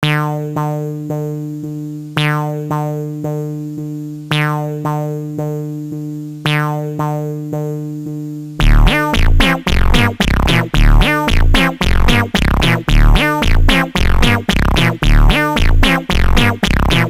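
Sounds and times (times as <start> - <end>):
steady low synth note: 8.6 - 17.0
synthesizer playing repeating pattern: 8.6 - 17.0.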